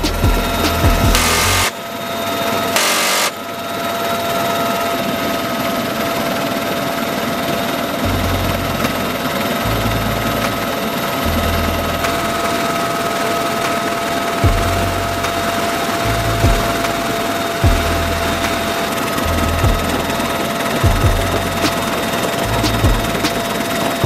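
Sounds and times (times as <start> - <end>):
minigun burst: 0.0 - 1.8, 2.7 - 3.5
helicopter droning: 0.0 - 24.0.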